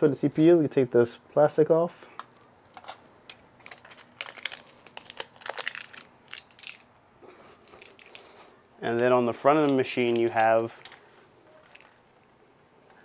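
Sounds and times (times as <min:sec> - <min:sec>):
plastic film peeling and crinkling: 0:02.2 - 0:12.3.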